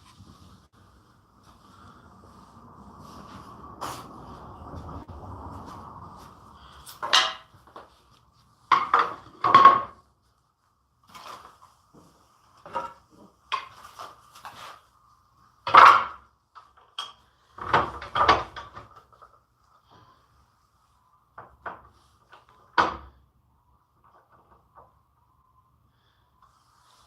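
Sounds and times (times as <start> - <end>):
wood and tools knocking on workbench: 8.7 - 10.0.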